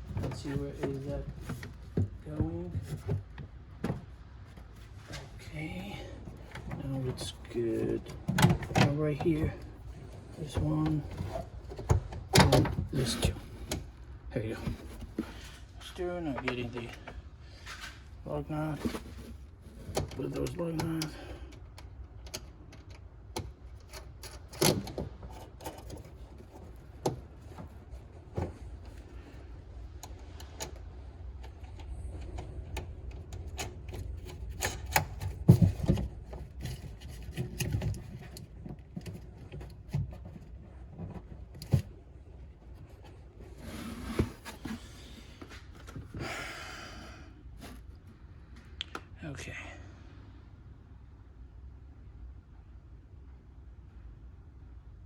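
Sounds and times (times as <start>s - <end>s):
car parts and tools clicking: 19.7s - 29.1s, 29.8s - 42.0s.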